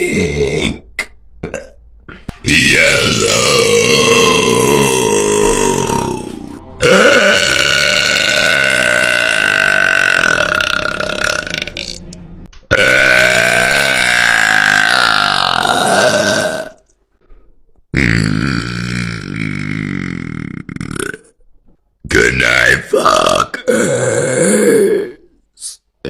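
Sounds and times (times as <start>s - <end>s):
woman burping loudly: 1.4s - 1.8s, 2.8s - 12.0s, 12.7s - 16.8s, 18.0s - 21.3s, 23.3s - 25.2s.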